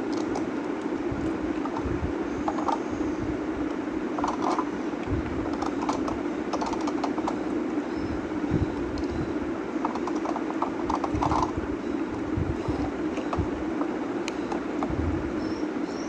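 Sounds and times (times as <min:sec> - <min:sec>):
steady low hum: 0:00.0 - 0:16.0
plastic toy pieces clicking: 0:05.5 - 0:07.4, 0:09.8 - 0:11.5.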